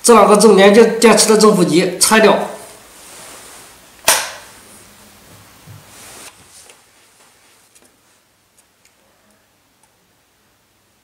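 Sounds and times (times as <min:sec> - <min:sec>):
sharp click: 0:04.0 - 0:04.4.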